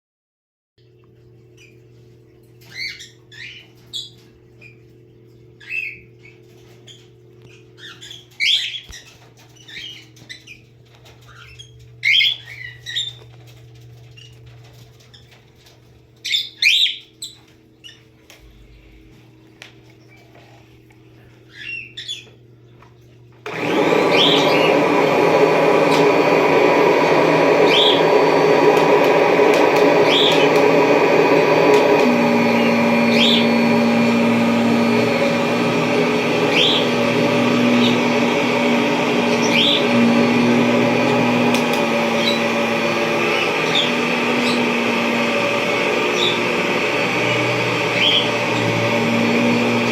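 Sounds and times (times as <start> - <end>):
birds chirping: 1.4 - 19.0, 20.0 - 22.8, 23.5 - 49.9
vacuum cleaner running: 23.4 - 49.9.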